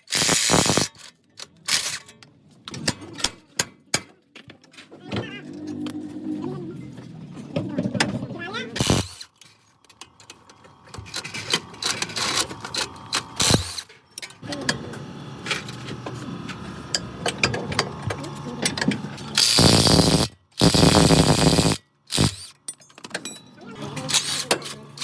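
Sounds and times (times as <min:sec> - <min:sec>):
loud tool bursts: 0:00.0 - 0:00.9, 0:08.8 - 0:09.3, 0:13.4 - 0:13.9, 0:19.3 - 0:22.6
mechanical clicking and ratcheting: 0:00.0 - 0:02.0, 0:08.8 - 0:10.3, 0:11.1 - 0:13.9, 0:19.3 - 0:22.7.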